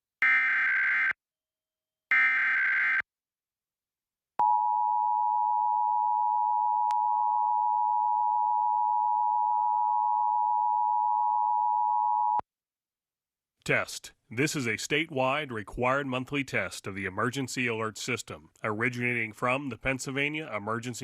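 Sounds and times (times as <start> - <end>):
steady two-tone alarm: 0.2 - 1.2, 2.1 - 3.0.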